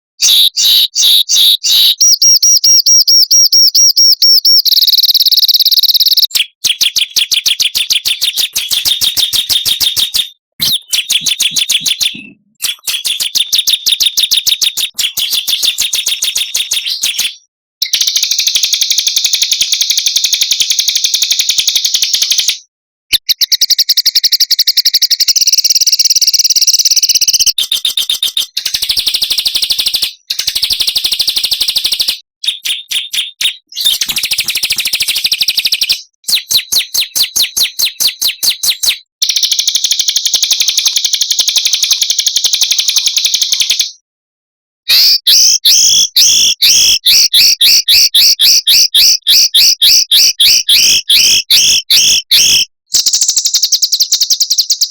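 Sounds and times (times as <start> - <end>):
songbirds rapid trills: 4.9 - 17.4, 27.4 - 43.8.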